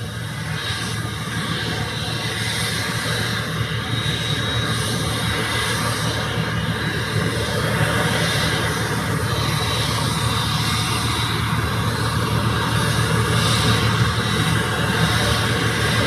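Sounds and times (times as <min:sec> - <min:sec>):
jet engine roar with whine: 0:00.0 - 0:16.0.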